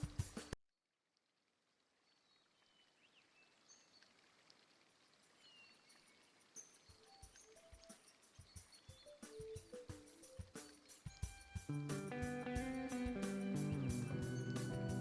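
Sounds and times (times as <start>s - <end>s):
faint outdoor ambience: 2.4s - 15.0s
music beat: 7.6s - 15.0s.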